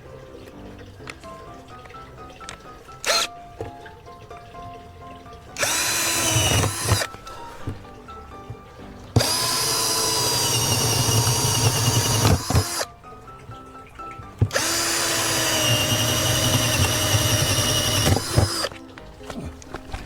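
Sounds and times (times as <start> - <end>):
power drill driving screws: 3.0 - 3.3, 5.6 - 7.1, 9.2 - 12.9, 14.5 - 18.7.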